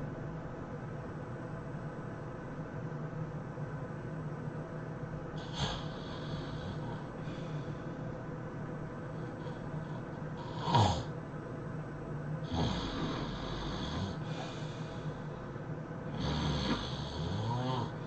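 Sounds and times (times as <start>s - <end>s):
person snoring: 5.4s - 7.9s, 9.1s - 11.1s, 12.4s - 15.2s, 16.1s - 18.0s.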